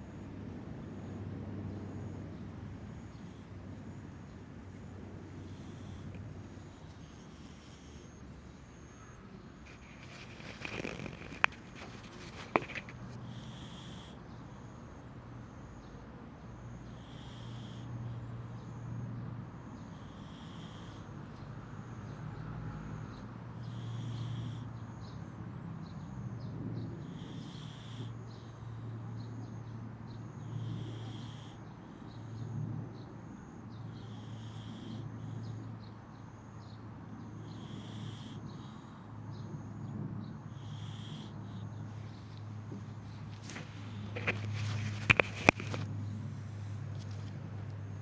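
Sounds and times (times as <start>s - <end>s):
cat snoring: 5.3s - 8.2s, 9.7s - 14.8s, 16.5s - 18.0s, 19.7s - 21.2s, 22.9s - 25.1s, 27.0s - 28.4s, 30.3s - 31.6s, 33.9s - 35.6s, 37.4s - 39.0s, 40.5s - 41.7s.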